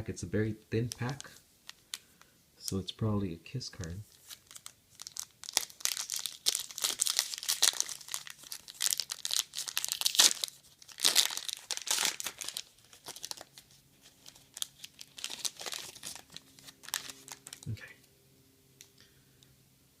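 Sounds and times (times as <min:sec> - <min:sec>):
wrapper tearing and crinkling: 0:04.1 - 0:17.7.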